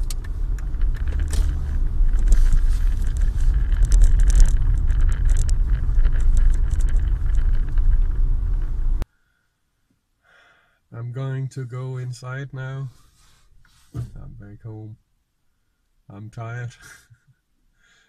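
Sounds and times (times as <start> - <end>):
car road rumble: 0.0 - 9.0.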